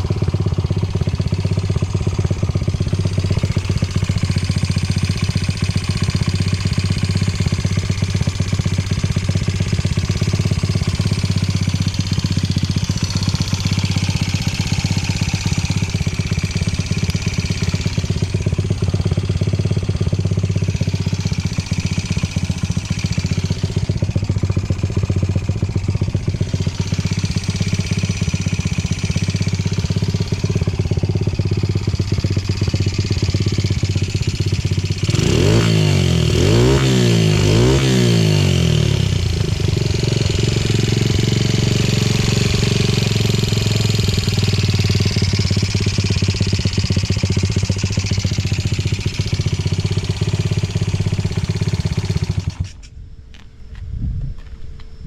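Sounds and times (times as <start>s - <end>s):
motorcycle engine idling: 0.0s - 53.4s
engine revving with throttle blips: 9.1s - 52.9s.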